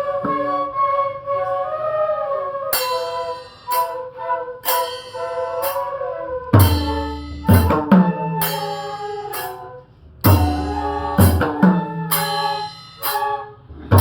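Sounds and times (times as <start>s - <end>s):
bamboo flute melody: 0.0s - 14.0s
hand drum strokes: 2.8s - 14.0s
deep bass drum strokes: 6.6s - 8.9s, 10.2s - 12.7s.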